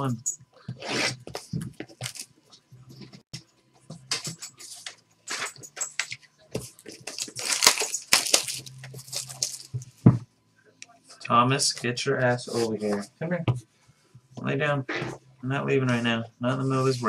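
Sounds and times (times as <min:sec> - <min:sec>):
plastic wrap and cardboard crinkling: 0:06.7 - 0:09.9.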